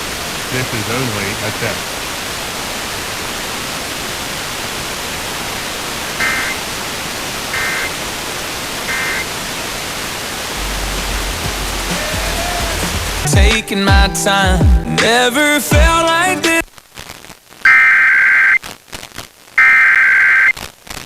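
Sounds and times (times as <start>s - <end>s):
radio static hiss: 0.0s - 14.4s, 15.0s - 21.0s
warbling digital data tones: 10.6s - 14.4s
low hum: 10.6s - 14.9s.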